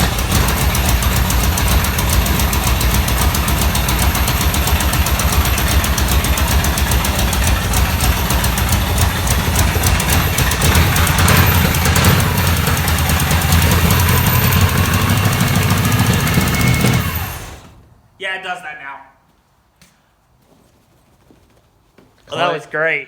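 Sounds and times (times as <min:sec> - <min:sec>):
car engine idling: 0:00.0 - 0:17.9.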